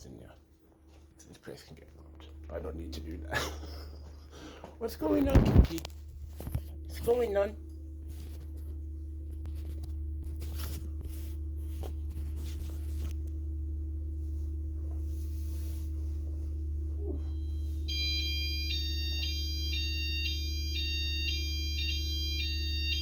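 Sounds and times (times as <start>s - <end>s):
electronic alarm beeping: 17.4s - 23.0s.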